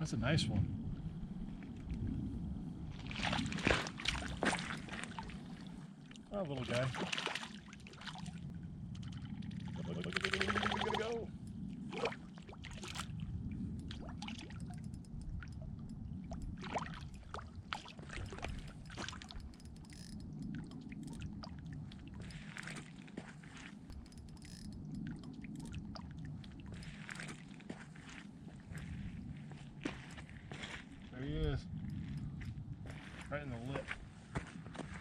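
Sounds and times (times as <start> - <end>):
water trickling and pouring: 3.1 - 29.2.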